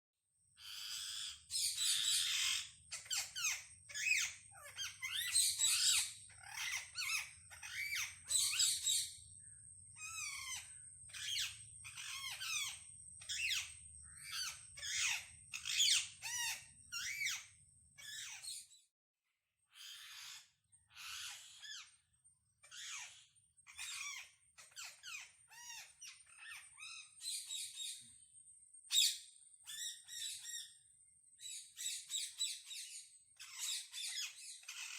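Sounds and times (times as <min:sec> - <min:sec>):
parrots squawking: 0:00.6 - 0:09.2, 0:10.0 - 0:18.6, 0:19.8 - 0:22.0, 0:22.6 - 0:27.8, 0:33.4 - 0:34.9.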